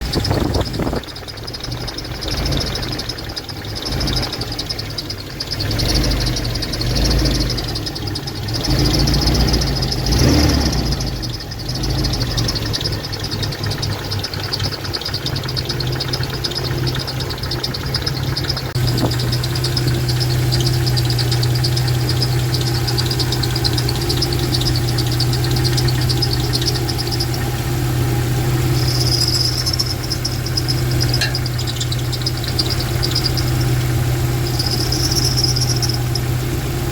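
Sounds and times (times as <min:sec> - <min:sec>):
car engine idling: 0:00.0 - 0:36.9
high-pitched belt whistle: 0:28.6 - 0:33.6.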